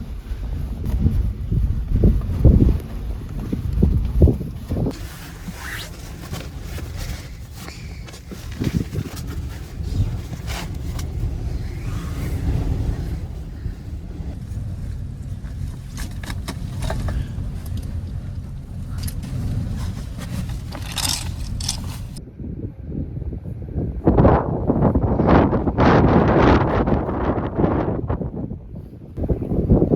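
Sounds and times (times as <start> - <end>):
wind buffeting microphone: 0.0 - 29.9
scrapes and knocks: 14.4 - 22.2.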